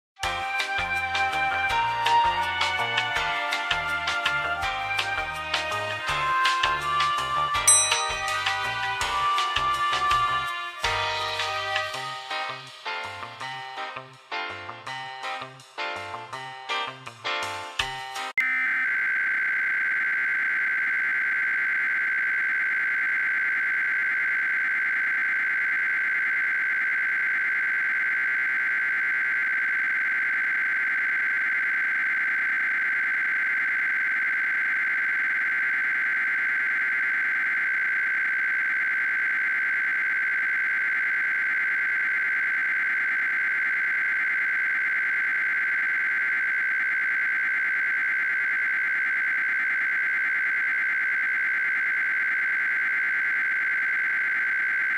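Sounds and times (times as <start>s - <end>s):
raspy electronic data tones: 17.5s - 54.9s.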